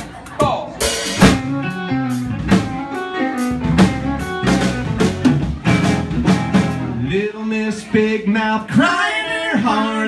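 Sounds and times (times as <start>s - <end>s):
country band playing: 0.0s - 10.0s
drum kit beat: 0.4s - 7.3s.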